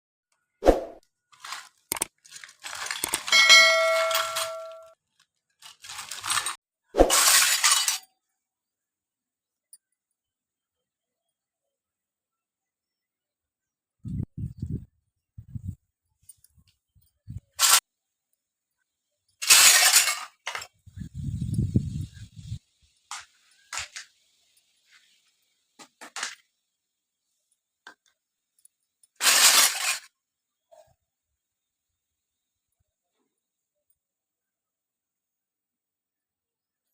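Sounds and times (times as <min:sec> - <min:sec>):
toy pieces rustling: 0:01.3 - 0:08.1, 0:19.4 - 0:20.8, 0:23.1 - 0:24.2, 0:29.2 - 0:30.1
noisy handling: 0:01.4 - 0:05.0
ringing clink: 0:03.3 - 0:05.0.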